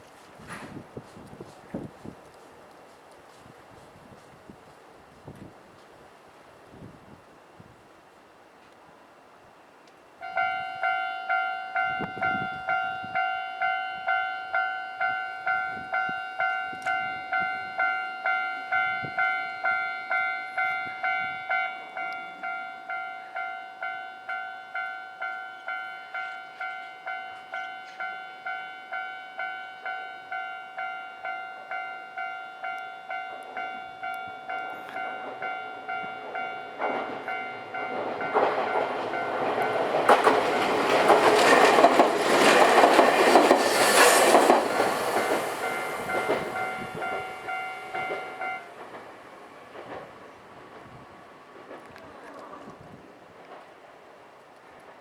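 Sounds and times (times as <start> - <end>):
train running noise: 0.0 - 7.4, 10.2 - 55.0
level-crossing warning bell: 10.2 - 41.2, 44.3 - 48.9.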